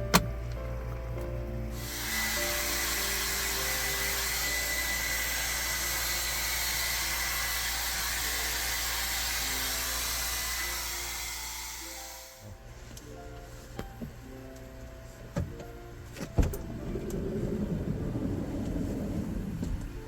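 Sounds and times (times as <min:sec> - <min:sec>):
faint background music: 0:00.0 - 0:20.0
steady rushing hiss: 0:01.7 - 0:12.9.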